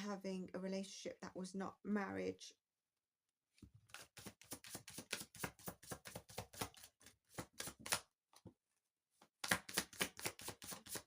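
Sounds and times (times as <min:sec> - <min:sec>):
cards being shuffled by hand: 0:03.9 - 0:08.1, 0:09.3 - 0:11.0.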